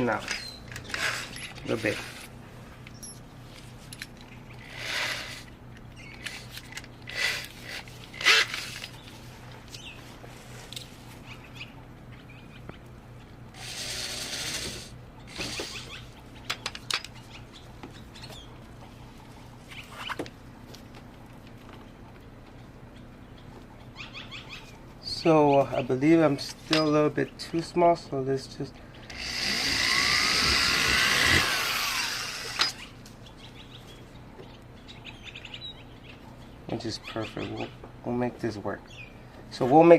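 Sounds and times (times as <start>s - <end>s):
drill chuck noisy bursts: 4.6s - 5.5s, 7.1s - 8.9s, 13.6s - 15.9s, 29.1s - 32.8s
drill click: 29.1s - 32.8s.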